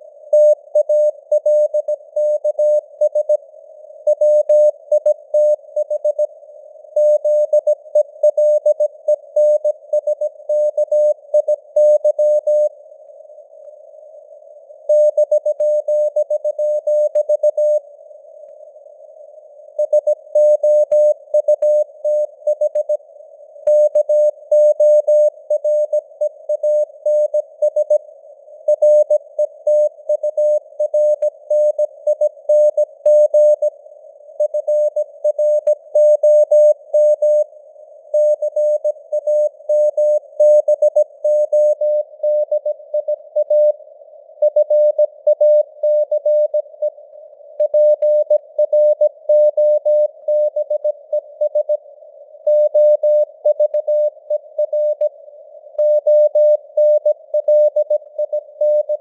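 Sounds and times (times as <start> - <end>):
faint radio noise hiss: 0.0 - 7.0, 8.9 - 45.8.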